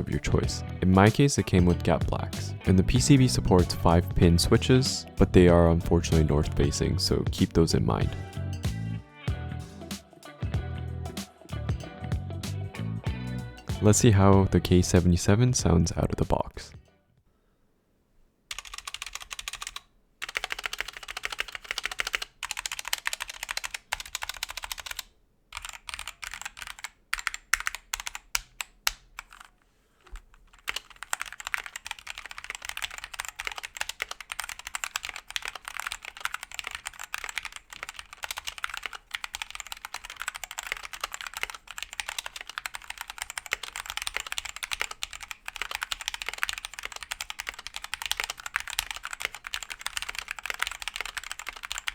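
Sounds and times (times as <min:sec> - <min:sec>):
mechanical keyboard typing: 0:18.5 - 0:29.5, 0:30.5 - 0:51.9.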